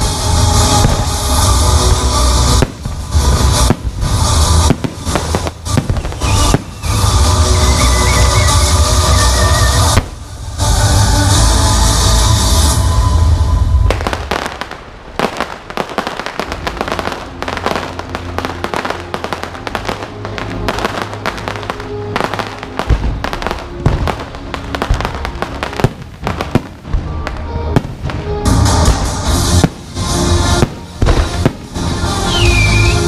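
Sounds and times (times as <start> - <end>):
background music: 0.0 - 33.0
fireworks crackling and popping: 0.0 - 33.0.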